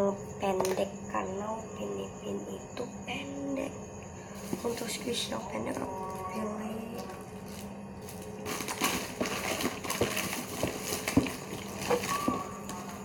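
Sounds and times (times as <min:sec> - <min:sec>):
squishy toys crinkling and rustling: 0:07.0 - 0:13.0.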